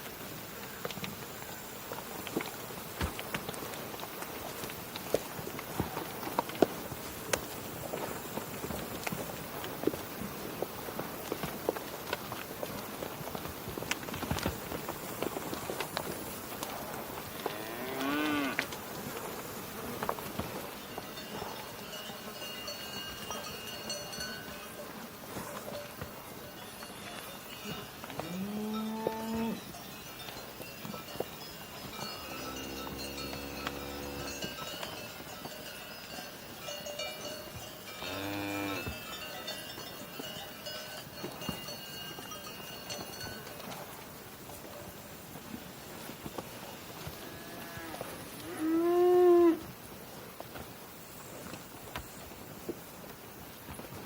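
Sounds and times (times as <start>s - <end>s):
cow mooing: 17.6s - 18.6s, 28.2s - 29.6s, 32.3s - 34.4s, 38.1s - 38.8s
cowbells clinking: 20.6s - 44.0s.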